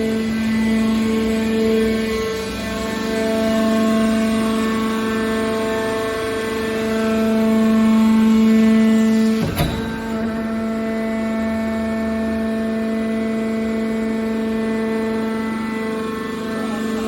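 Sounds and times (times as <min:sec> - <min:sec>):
hydraulic baler humming: 0:08.2 - 0:15.5
sharp metal clank: 0:09.4 - 0:11.2.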